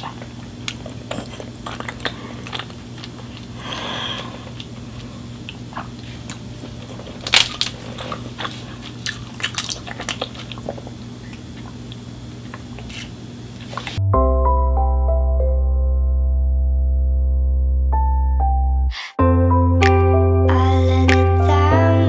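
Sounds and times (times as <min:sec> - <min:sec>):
chewing crunchy food: 0:00.0 - 0:14.0
soft electric piano music: 0:14.0 - 0:22.0.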